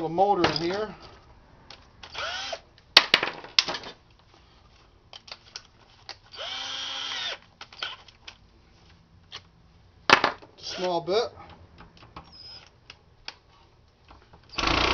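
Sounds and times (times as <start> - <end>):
clicks and knocks of parts: 0.4 - 4.3, 5.1 - 6.3
electric power drill spinning: 2.0 - 2.6, 6.3 - 8.1, 14.5 - 14.9.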